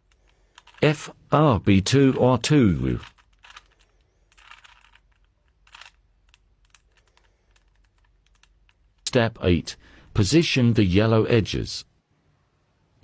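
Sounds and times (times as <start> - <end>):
puzzle cube plastic clicks: 0.0 - 1.0, 1.9 - 9.1
puzzle cube scraping turns: 0.0 - 1.2, 1.8 - 9.1.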